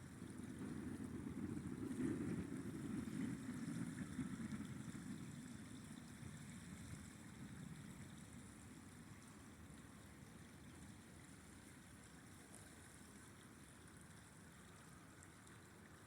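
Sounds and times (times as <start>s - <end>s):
river water flowing: 5.5s - 16.0s.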